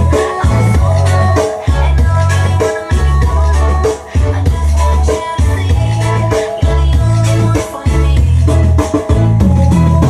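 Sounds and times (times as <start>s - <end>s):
electronic dance music booming bass: 0.0s - 10.0s.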